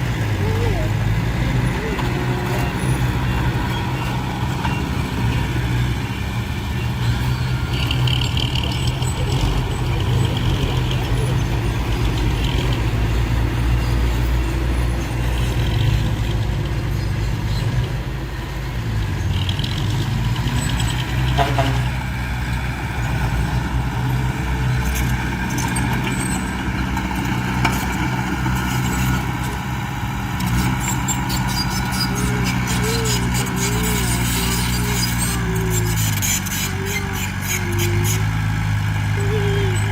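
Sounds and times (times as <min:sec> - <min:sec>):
heavy diesel engine droning: 0:00.0 - 0:39.9.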